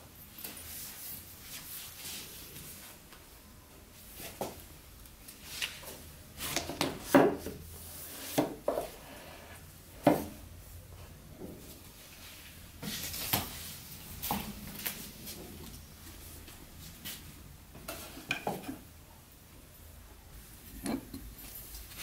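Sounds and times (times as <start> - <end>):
objects knocking and clattering: 17.8 - 18.9.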